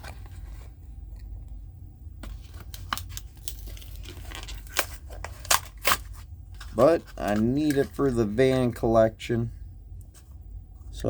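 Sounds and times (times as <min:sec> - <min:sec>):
plastic packaging crinkling and tearing: 0:02.3 - 0:08.9
sharp plastic cracks: 0:04.3 - 0:06.1.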